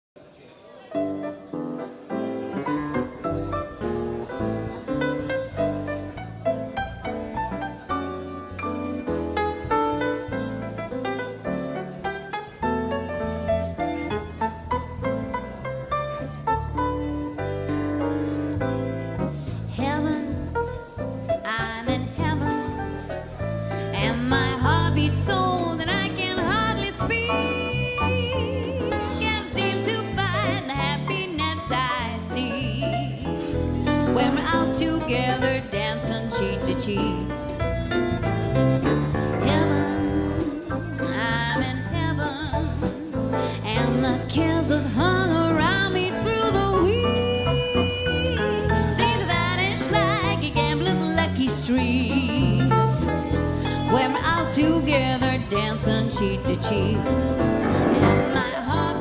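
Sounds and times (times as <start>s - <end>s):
piano music: 1.0s - 59.0s
low bass line: 13.2s - 59.0s.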